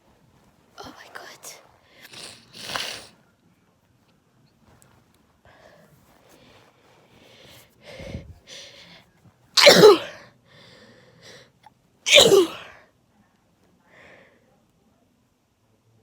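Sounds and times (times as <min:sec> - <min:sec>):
soft breaths: 0:04.6 - 0:09.4, 0:10.1 - 0:11.6, 0:13.6 - 0:14.7
person sneezing: 0:09.6 - 0:10.2, 0:12.1 - 0:12.8.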